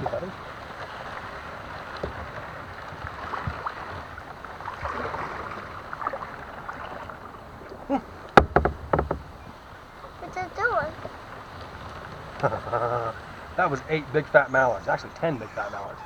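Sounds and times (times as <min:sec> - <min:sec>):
water lapping against hull: 0:00.0 - 0:16.0
small knocks and rustles: 0:08.3 - 0:09.7.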